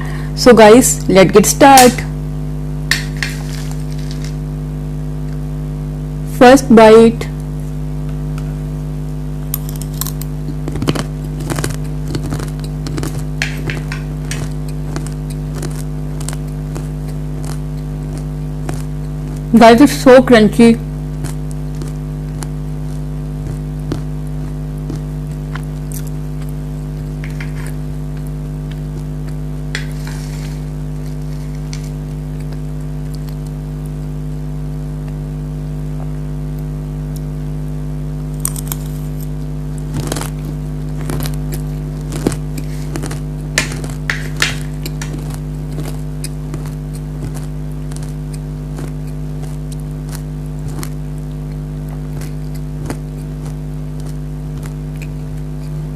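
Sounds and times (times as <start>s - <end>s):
steady low hum: 0.0s - 55.9s
crunchy snack being chewed: 9.5s - 19.5s, 21.1s - 33.6s, 38.4s - 55.9s.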